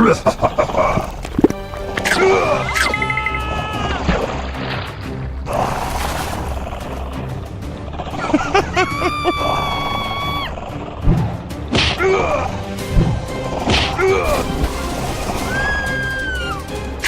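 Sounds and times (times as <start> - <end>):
background music: 0.0 - 17.0
falling slide: 14.2 - 16.6.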